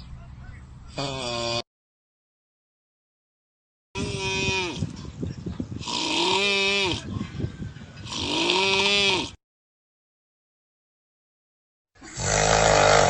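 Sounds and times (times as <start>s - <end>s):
person making drawn-out calls: 0.9s - 1.6s, 4.0s - 4.9s.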